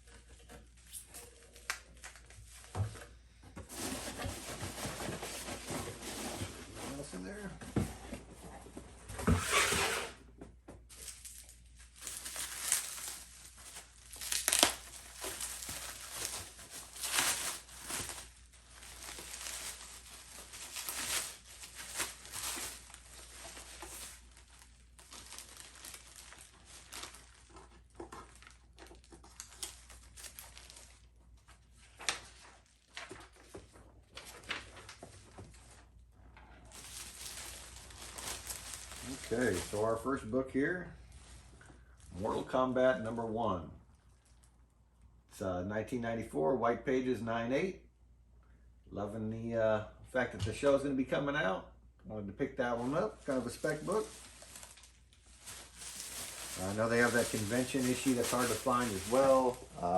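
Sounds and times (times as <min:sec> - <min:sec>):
bubble wrap crinkling: 0:00.0 - 0:03.1, 0:10.8 - 0:40.2, 0:43.9 - 0:44.7, 0:52.7 - 0:59.9.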